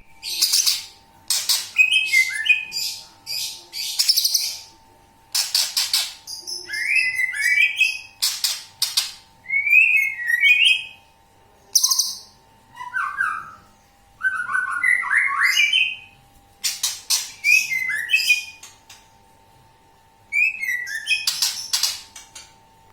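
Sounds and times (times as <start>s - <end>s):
faint steady hum: 0.0s - 22.9s
bird singing chirps and whistles: 1.7s - 3.0s, 6.3s - 8.4s, 9.4s - 11.0s, 11.8s - 16.2s, 17.1s - 18.7s, 20.3s - 22.0s.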